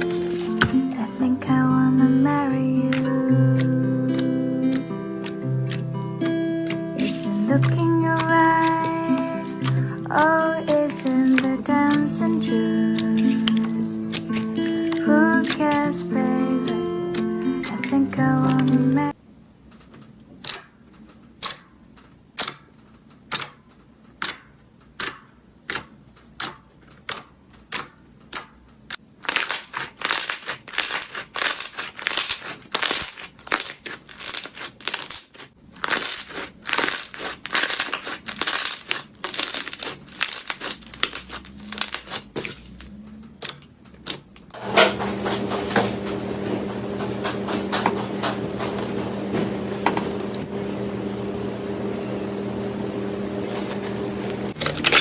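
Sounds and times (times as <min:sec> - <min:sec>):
steady mechanical hum: 0:00.0 - 0:55.0
slime popping and crackling: 0:02.8 - 0:15.8, 0:24.2 - 0:44.6.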